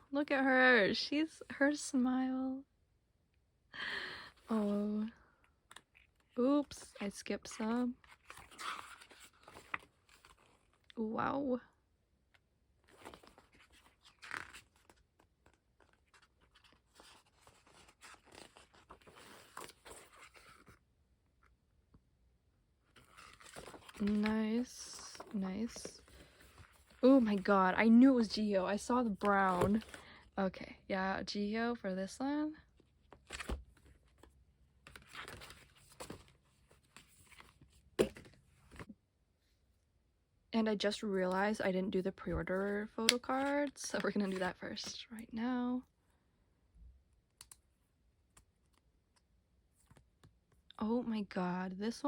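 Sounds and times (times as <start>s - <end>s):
cards rustling and scraping: 7.6s - 10.9s, 12.8s - 20.8s, 22.9s - 30.2s, 33.0s - 38.9s, 42.4s - 45.0s
packaging crinkling and rustling: 23.0s - 27.5s.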